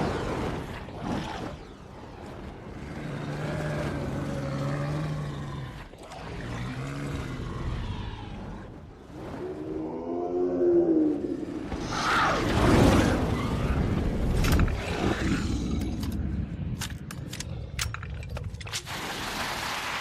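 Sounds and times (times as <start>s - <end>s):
deep dragon calls: 2.7s - 12.7s.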